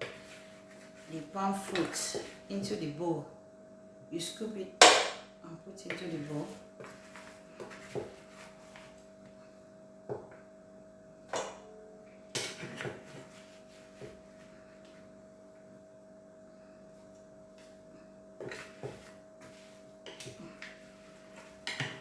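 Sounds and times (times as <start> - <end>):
low hum: 10.5 - 12.3.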